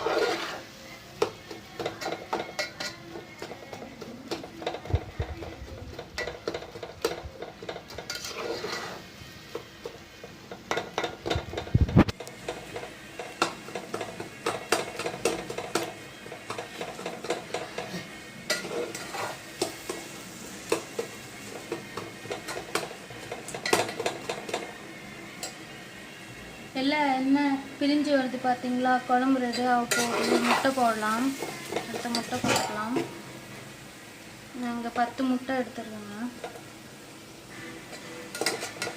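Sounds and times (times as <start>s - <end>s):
spoon scraping a pan: 0.0s - 25.7s, 29.5s - 33.2s, 37.5s - 38.9s
faint sizzle of frying oil: 0.0s - 38.9s.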